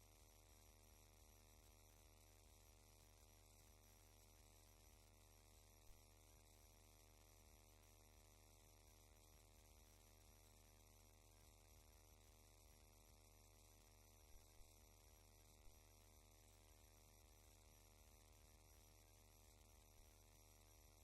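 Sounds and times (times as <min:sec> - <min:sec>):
faint electrical hum: 0:08.9 - 0:21.0.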